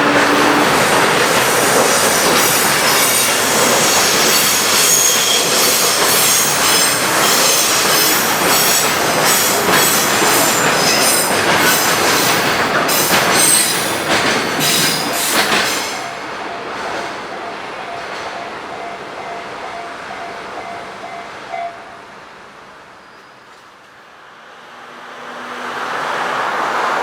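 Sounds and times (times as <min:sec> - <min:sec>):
train wheels clacking on rails: 0:00.0 - 0:21.4.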